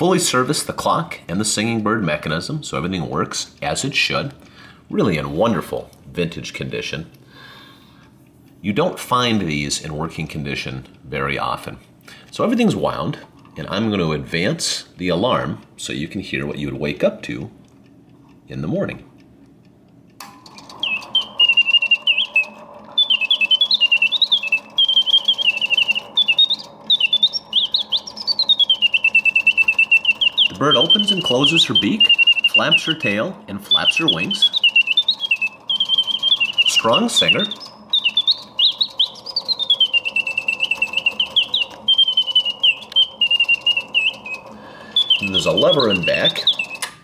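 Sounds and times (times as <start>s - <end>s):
mechanism whirring: 0.0s - 47.0s
mechanical bird chirps and trills: 20.2s - 47.0s.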